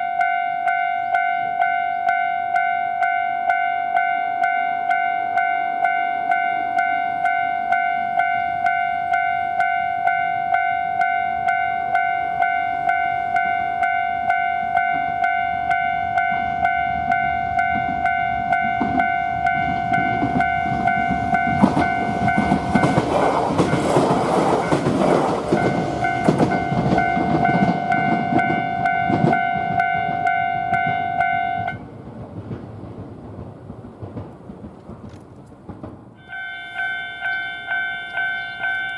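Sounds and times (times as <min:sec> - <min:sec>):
level-crossing warning bell: 0:00.0 - 0:31.9, 0:36.2 - 0:38.9
train wheels clattering over rails: 0:16.2 - 0:38.9.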